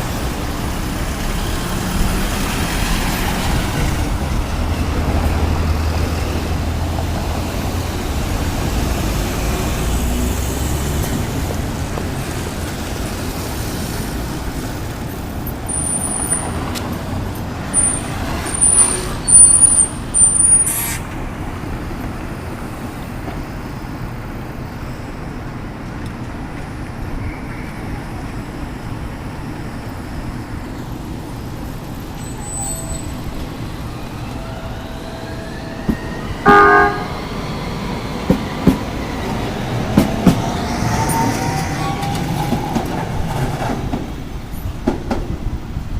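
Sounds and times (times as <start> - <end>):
heavy vehicle rumble: 0.0 - 45.9
road traffic: 0.0 - 45.9
brake squeal: 17.7 - 21.2, 27.0 - 28.4, 31.8 - 37.3, 40.6 - 43.0.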